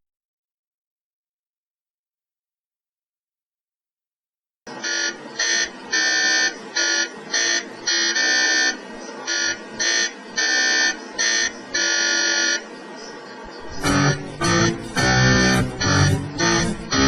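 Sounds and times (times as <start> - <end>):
mri scanner buzzing: 4.7 - 17.0.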